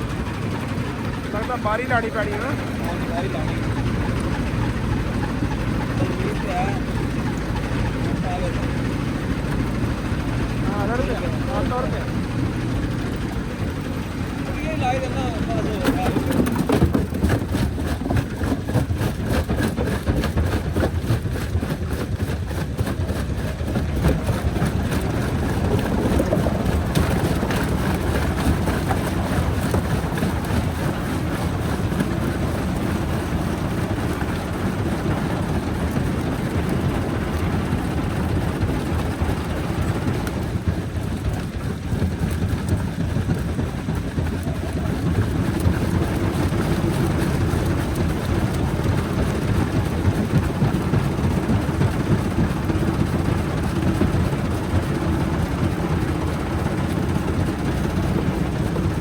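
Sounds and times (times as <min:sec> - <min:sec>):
rock crusher rumbling: 0:00.0 - 0:59.0.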